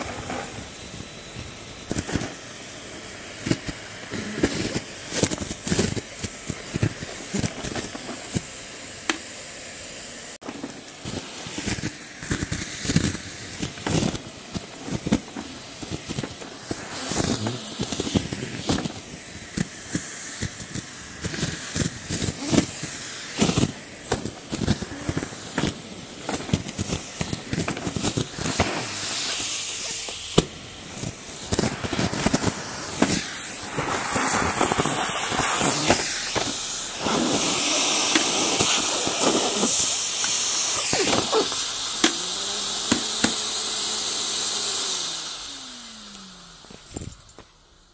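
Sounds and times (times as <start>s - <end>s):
vacuum cleaner running: 0.0s - 47.9s.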